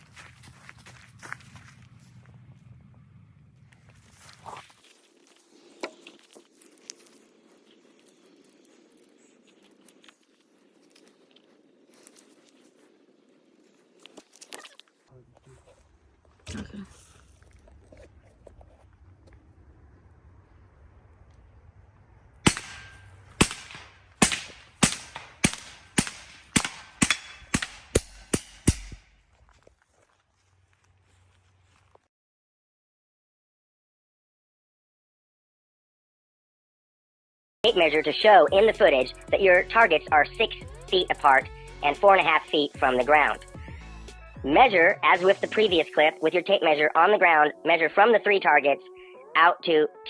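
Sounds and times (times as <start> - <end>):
air rifle shots cracking: 22.4 - 29.1.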